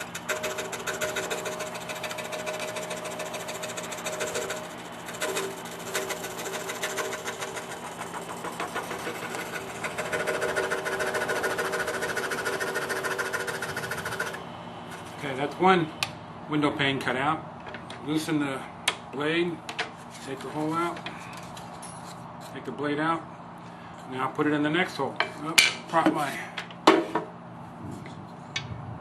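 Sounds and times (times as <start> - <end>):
scroll saw cutting wood: 0.0 - 15.2.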